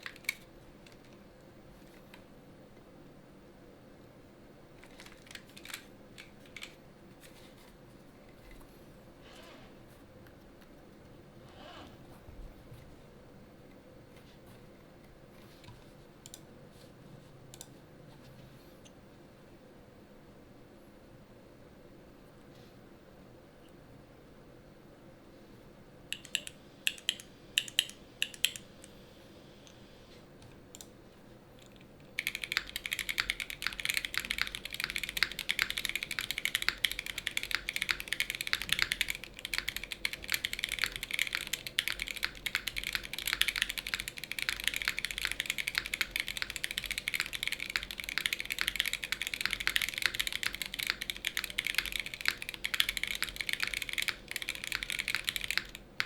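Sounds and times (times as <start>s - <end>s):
mechanical keyboard typing: 0.0s - 1.2s, 4.8s - 6.8s, 26.1s - 28.9s, 31.6s - 56.0s.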